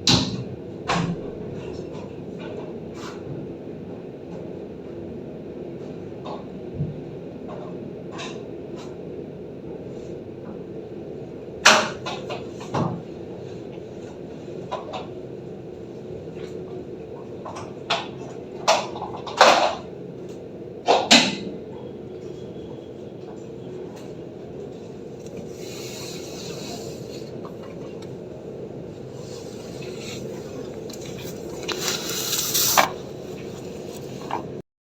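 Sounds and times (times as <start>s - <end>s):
steady rain hiss: 31.2s - 34.2s.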